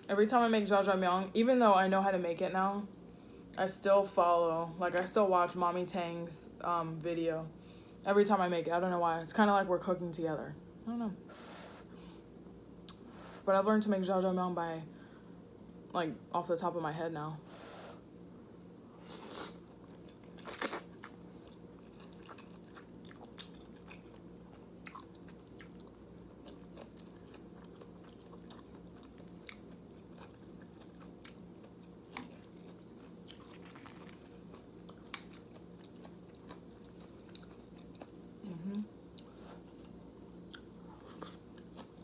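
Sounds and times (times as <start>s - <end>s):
chewing noodles: 18.8s - 38.2s, 39.1s - 42.0s.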